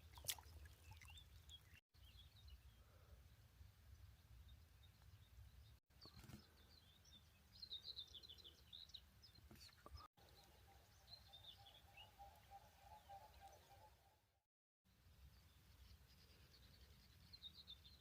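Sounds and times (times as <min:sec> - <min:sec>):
small birds chirping: 0:00.0 - 0:13.9.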